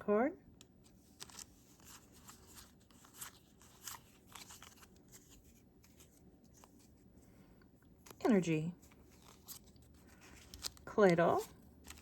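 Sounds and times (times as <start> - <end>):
trading cards shuffled: 0.8 - 7.0, 8.0 - 12.0
foil pack crinkling: 8.9 - 12.0.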